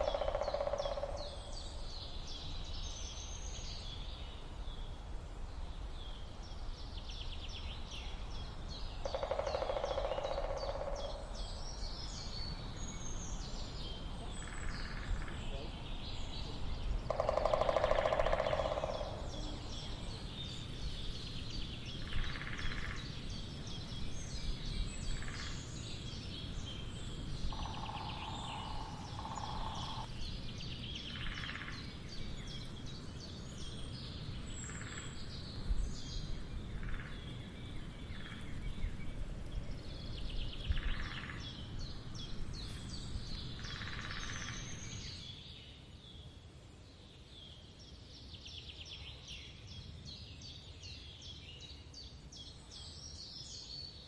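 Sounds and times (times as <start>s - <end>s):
woodpecker drumming: 0.0s - 1.4s, 9.0s - 11.4s, 17.1s - 19.5s, 27.5s - 30.1s
small birds chirping: 0.0s - 54.0s.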